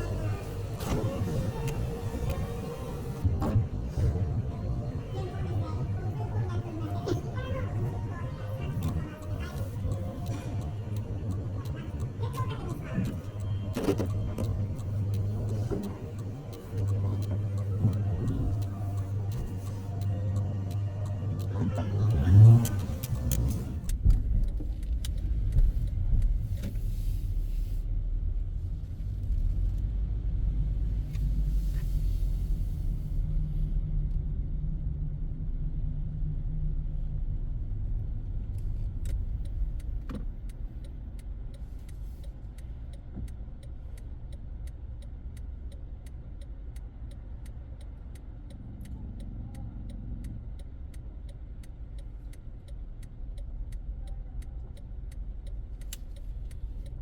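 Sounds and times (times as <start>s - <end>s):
road and engine rumble: 0.0s - 57.0s
faint ticks: 6.7s - 27.8s, 38.4s - 57.0s.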